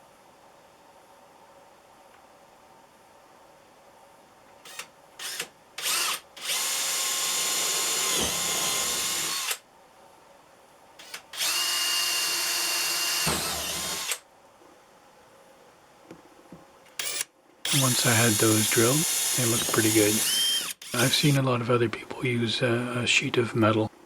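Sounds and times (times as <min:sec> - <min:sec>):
electric drill whining: 0:04.7 - 0:09.6, 0:11.0 - 0:14.2, 0:17.0 - 0:21.4.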